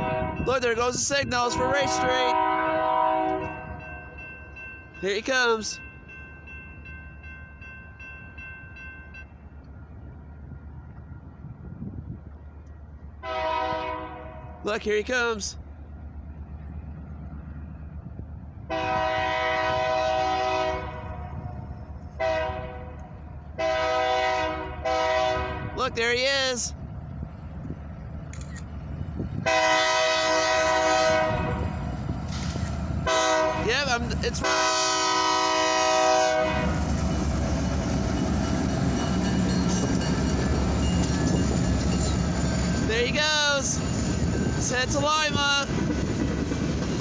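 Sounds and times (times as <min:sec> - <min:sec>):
locomotive air horn blowing: 0:00.0 - 0:00.5, 0:01.6 - 0:03.8, 0:13.2 - 0:14.6, 0:18.7 - 0:21.5, 0:22.2 - 0:25.8, 0:29.4 - 0:31.8, 0:33.0 - 0:33.7, 0:34.4 - 0:36.9
wind on microphone: 0:00.0 - 0:03.8, 0:09.9 - 0:12.5, 0:28.7 - 0:33.0
train rumbling: 0:00.0 - 0:47.0.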